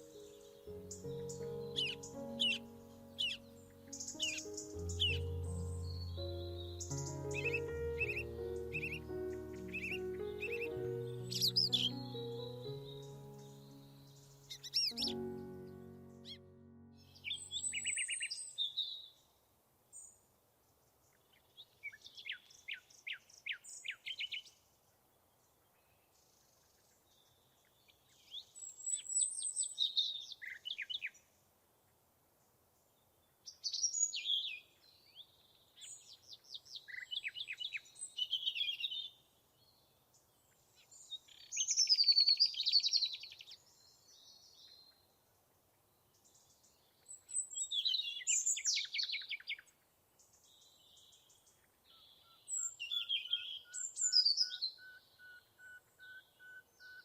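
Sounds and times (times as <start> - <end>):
songbirds singing: 0.0 - 19.2, 33.0 - 57.0.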